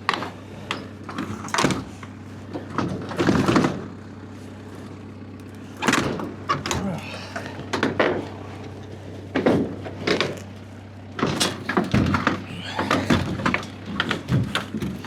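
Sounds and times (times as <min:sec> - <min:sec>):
shed door banging and rattling: 0:00.0 - 0:03.9, 0:05.8 - 0:07.0, 0:09.3 - 0:10.4, 0:11.1 - 0:15.0
low engine hum: 0:00.0 - 0:15.0.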